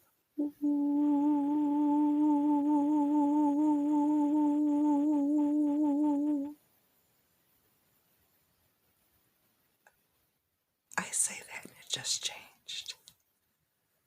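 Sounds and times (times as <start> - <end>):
woman humming a steady note: 0.4 - 6.6.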